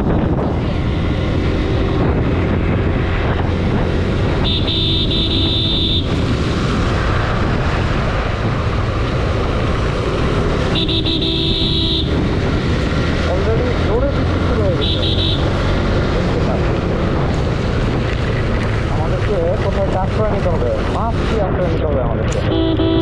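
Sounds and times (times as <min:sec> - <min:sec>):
motorcycle wind and road noise: 0:00.0 - 0:23.0
vehicle horn honking: 0:04.4 - 0:06.2, 0:10.7 - 0:12.2, 0:14.8 - 0:15.5, 0:22.5 - 0:23.0.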